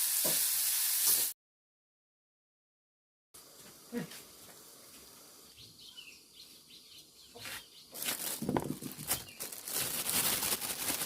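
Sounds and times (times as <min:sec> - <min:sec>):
small birds chirping: 0:05.4 - 0:10.9.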